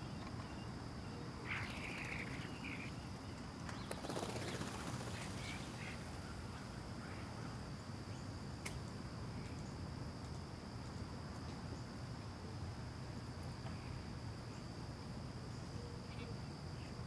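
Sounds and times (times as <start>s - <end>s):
bird calls: 0.0s - 7.6s.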